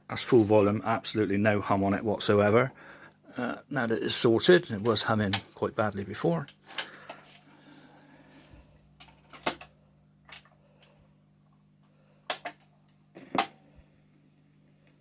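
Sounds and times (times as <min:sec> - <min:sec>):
record player clicks and knocks: 0:09.0 - 0:09.7.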